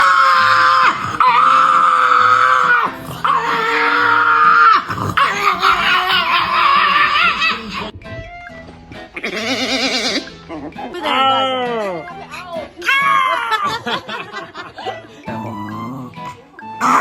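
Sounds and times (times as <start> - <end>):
dog howling: 0.0 - 8.0.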